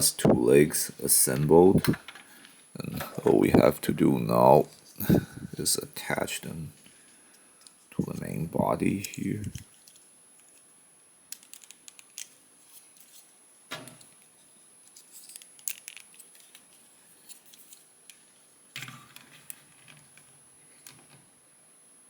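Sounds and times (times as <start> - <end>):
plastic parts clicking: 11.3 - 12.4, 15.3 - 16.7.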